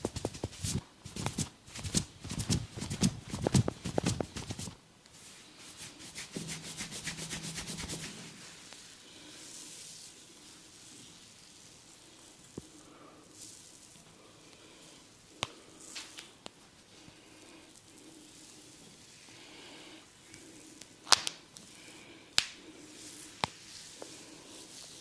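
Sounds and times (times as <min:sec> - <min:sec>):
hands slapping on head: 0:00.0 - 0:04.8, 0:22.4 - 0:22.6
hands rubbing hair and skin: 0:00.0 - 0:14.1, 0:15.2 - 0:17.1, 0:20.2 - 0:25.0.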